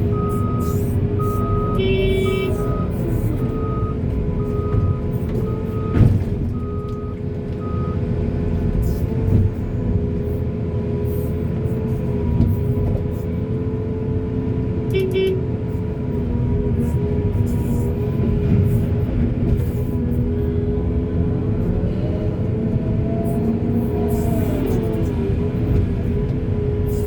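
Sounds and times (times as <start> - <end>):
reversing alarm beeping: 0.0 - 8.0
diesel machinery running: 0.0 - 27.0.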